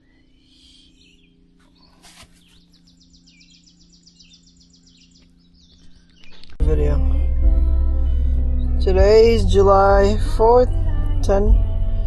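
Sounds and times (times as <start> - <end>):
bird trill: 0.0 - 6.6
faint birds chirping: 0.0 - 7.2
low steady hum: 0.0 - 12.0.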